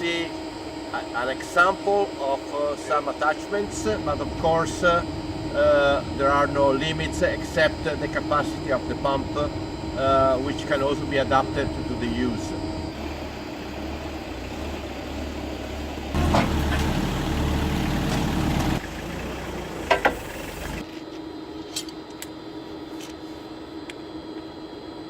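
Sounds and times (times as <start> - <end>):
forklift engine running: 12.8 - 20.8
sharp metallic clunk: 19.9 - 20.3.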